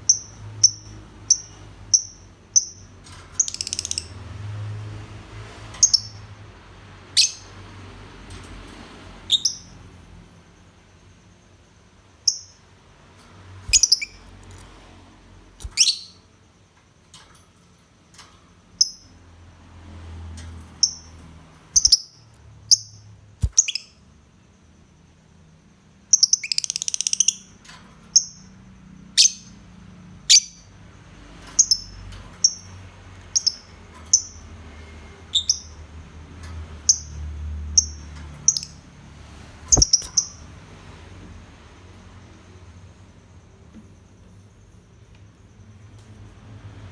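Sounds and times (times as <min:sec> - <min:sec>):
bird chirping: 0:00.1 - 0:04.1, 0:09.3 - 0:09.7, 0:13.7 - 0:14.6, 0:15.6 - 0:16.2, 0:21.8 - 0:24.0, 0:26.1 - 0:27.5, 0:33.3 - 0:34.4, 0:35.3 - 0:35.8, 0:37.8 - 0:38.8, 0:39.7 - 0:40.5.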